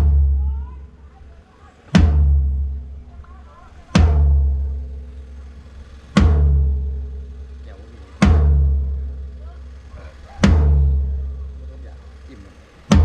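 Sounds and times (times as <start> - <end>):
kick drum thuds: 1.9 - 5.1, 6.1 - 7.3, 8.2 - 9.5, 10.4 - 11.4.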